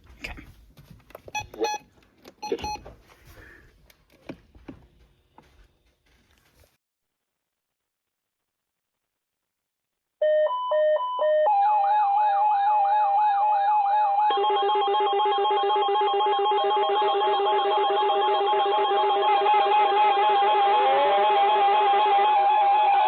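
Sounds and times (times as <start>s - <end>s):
alternating beeping tones: 10.3s - 21.7s
rising and falling siren whoop: 10.8s - 23.0s
pulsing beeps: 12.8s - 21.8s.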